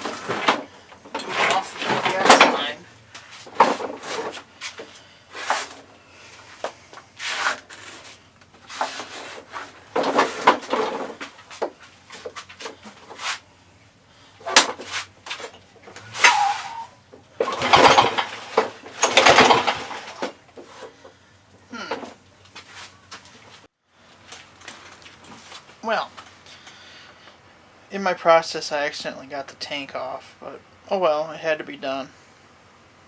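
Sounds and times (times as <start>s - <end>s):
tools clunking and scraping: 0.0s - 13.4s.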